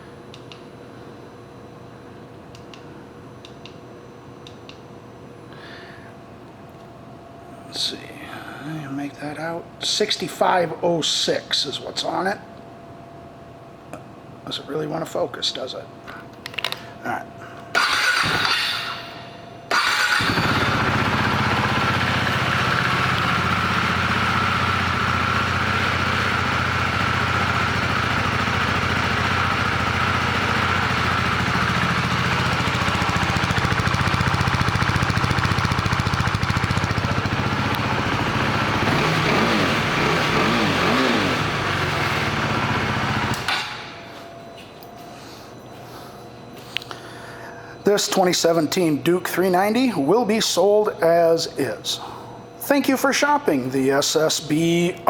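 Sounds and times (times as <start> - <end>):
motorcycle engine idling and revving: 19.8 - 43.8.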